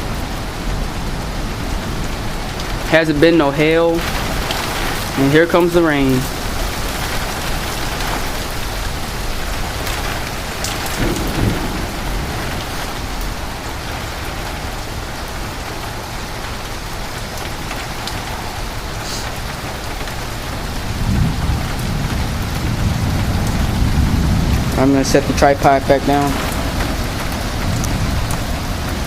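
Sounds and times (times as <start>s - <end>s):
heavy rain pouring: 0.0s - 29.0s
rain drop hits: 0.0s - 29.0s
thunder rumble: 0.0s - 29.0s.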